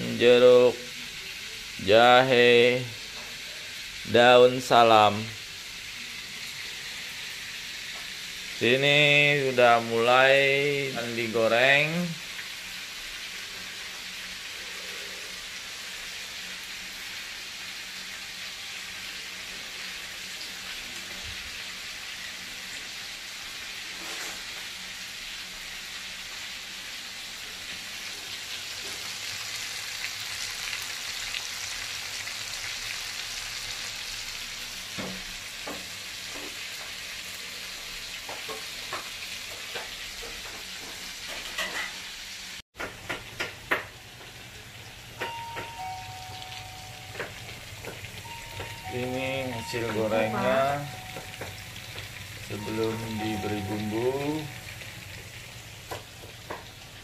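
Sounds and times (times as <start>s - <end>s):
fish skin sizzling in oil: 0.1s - 8.9s, 11.1s - 57.0s
utensil knocking on pan: 42.8s - 44.3s.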